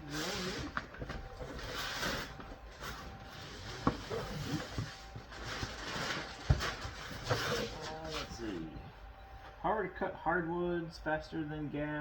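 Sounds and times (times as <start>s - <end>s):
cardboard box rustling: 0.0s - 8.6s.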